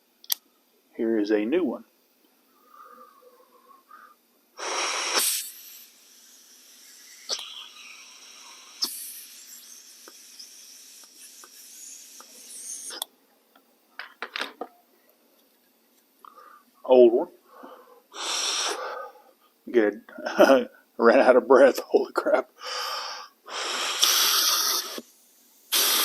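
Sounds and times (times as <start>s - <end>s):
air blown through filter hissing: 2.4s - 13.1s, 17.4s - 19.2s, 22.6s - 26.0s.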